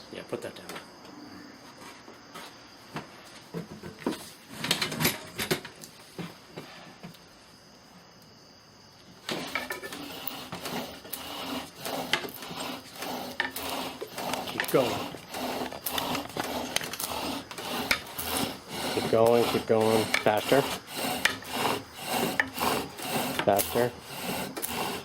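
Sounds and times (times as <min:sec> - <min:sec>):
bow drill rasping: 0:09.2 - 0:25.0.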